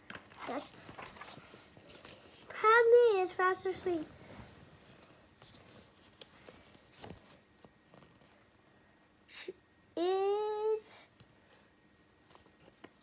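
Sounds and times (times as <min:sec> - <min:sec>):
faint small rustles: 0:00.2 - 0:08.9, 0:11.1 - 0:13.0
child's drawn-out voiced sound: 0:10.0 - 0:11.1.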